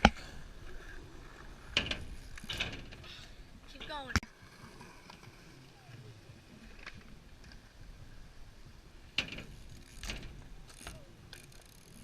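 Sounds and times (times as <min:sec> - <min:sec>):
bmx bike clack: 0:00.0 - 0:04.2, 0:09.0 - 0:12.0
bmx bike rattling scrapes: 0:09.1 - 0:12.0.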